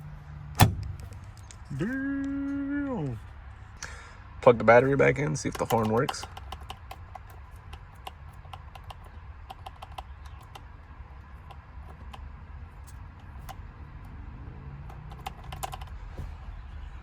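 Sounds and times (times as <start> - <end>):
hand tool clicking on battery terminal: 4.9 - 10.7.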